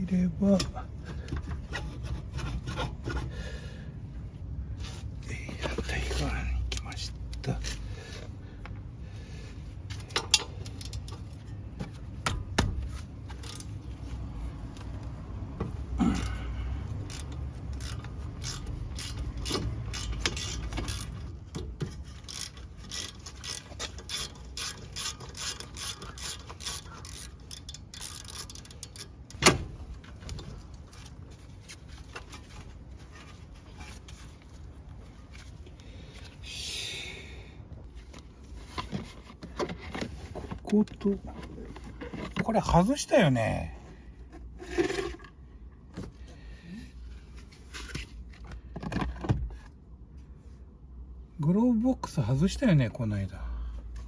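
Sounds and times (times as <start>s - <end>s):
ratchet wrench clicking: 13.3s - 13.7s, 17.0s - 21.3s, 22.0s - 29.3s.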